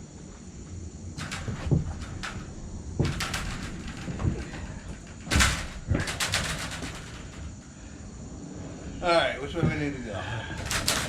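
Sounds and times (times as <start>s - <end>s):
metal clanks and knocks: 1.1s - 7.8s, 10.5s - 11.0s.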